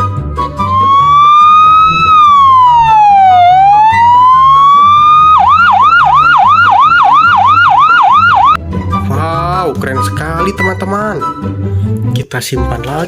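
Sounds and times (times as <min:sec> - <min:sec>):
toy electronic siren: 0:00.6 - 0:08.6.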